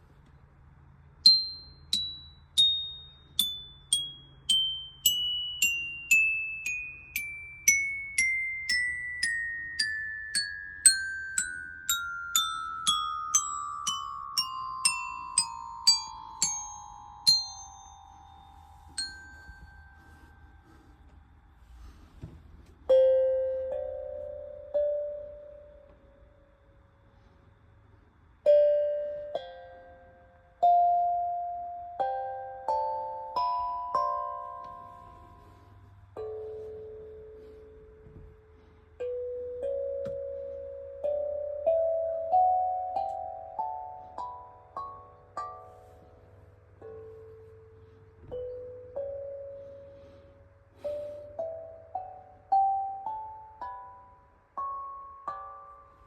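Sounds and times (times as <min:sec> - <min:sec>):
metal chimes ringing: 0:01.2 - 0:21.4.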